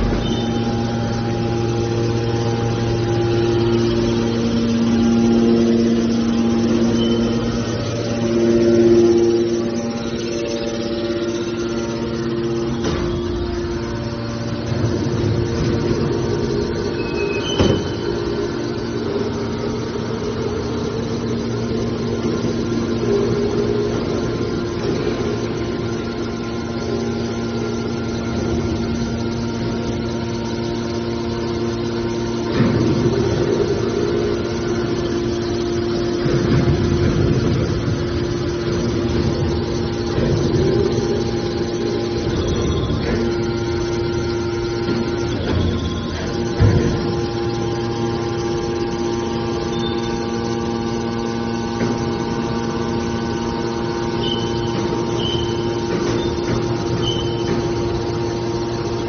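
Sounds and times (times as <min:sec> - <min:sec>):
baler machine hum: 0:00.0 - 0:59.0.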